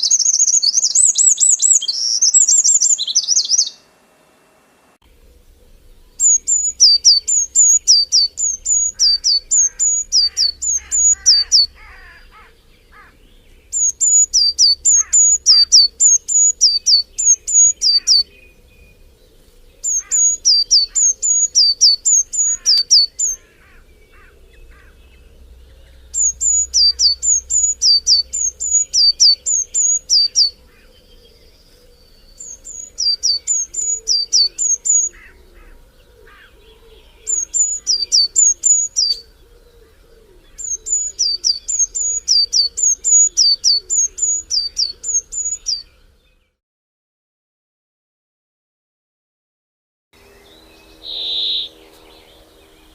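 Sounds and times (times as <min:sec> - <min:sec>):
songbird singing two-note phrases: 0:00.0 - 0:03.9, 0:05.1 - 0:35.8, 0:36.4 - 0:39.3, 0:50.2 - 0:52.9
faint calls of other birds: 0:05.1 - 0:46.6, 0:50.2 - 0:52.9.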